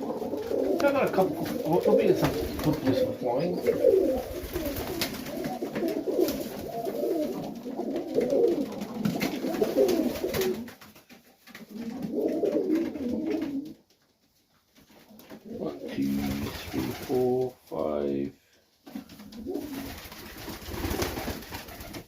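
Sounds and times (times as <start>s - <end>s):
pigeons cooing: 0.0s - 10.7s, 11.6s - 13.8s, 19.2s - 20.1s.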